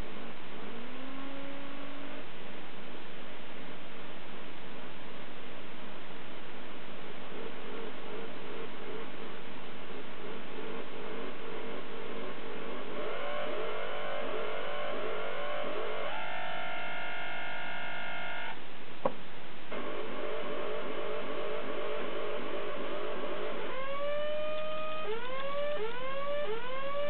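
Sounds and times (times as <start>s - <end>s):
buzzy electronic drone: 0.0s - 2.4s, 7.3s - 18.6s, 19.7s - 27.0s
swooping electronic chirps: 0.6s - 2.2s, 10.6s - 18.6s, 20.7s - 27.0s.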